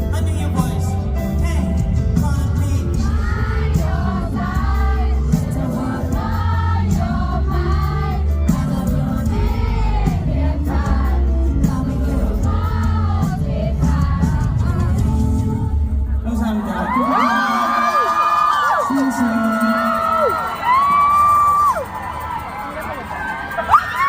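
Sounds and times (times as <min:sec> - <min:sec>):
man singing over backing track: 0:00.0 - 0:03.5.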